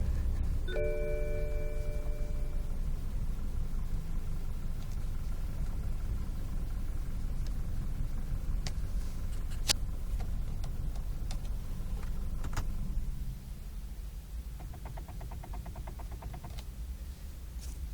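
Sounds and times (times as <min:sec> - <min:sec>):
car engine idling: 0:00.0 - 0:17.8
sharp steering knocks: 0:14.6 - 0:16.6.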